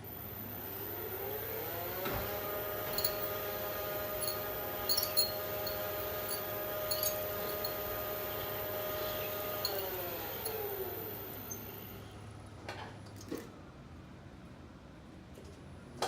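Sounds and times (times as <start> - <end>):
lift drive whine and hum: 0.0 - 12.5.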